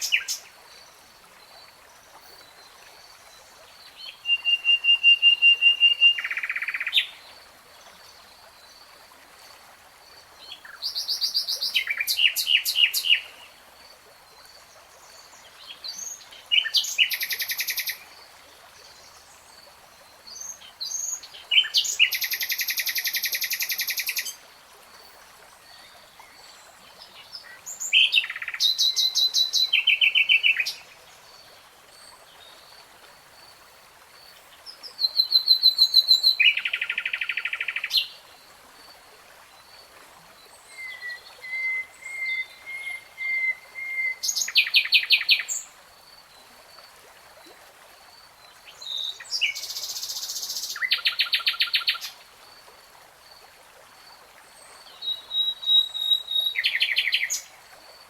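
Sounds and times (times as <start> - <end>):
songbird singing: 0.0 - 0.5, 2.2 - 7.2, 25.0 - 31.3, 33.5 - 38.2, 40.4 - 45.8, 48.5 - 52.2, 54.6 - 57.6.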